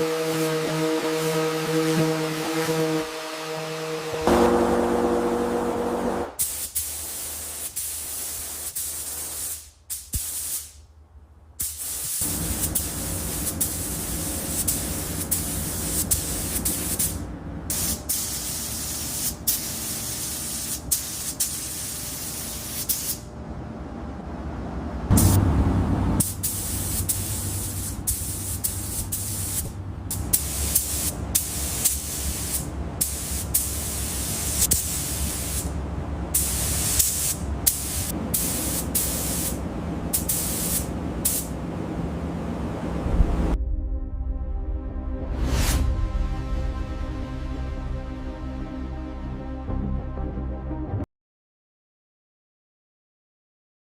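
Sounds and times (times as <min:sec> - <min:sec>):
low steady hum: 0:04.2 - 0:06.4, 0:12.3 - 0:19.2, 0:23.2 - 0:44.9
spray nozzle hissing: 0:11.6 - 0:23.2, 0:26.2 - 0:35.7, 0:36.4 - 0:41.5.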